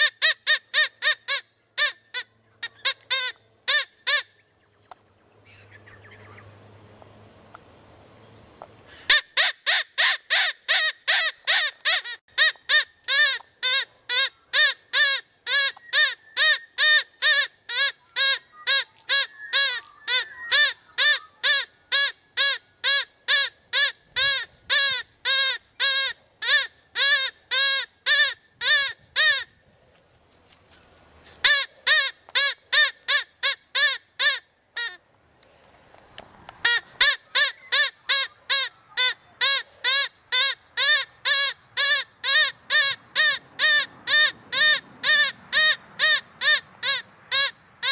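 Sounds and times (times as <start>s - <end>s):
electronic rabbit distress call: 17.7s - 22.1s.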